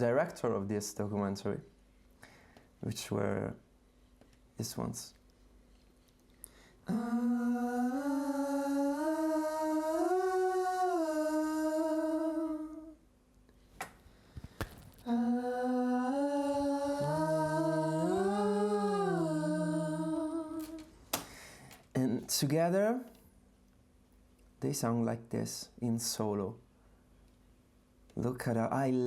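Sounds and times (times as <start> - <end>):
wordless vocal harmony: 6.8 - 13.0, 15.0 - 21.3.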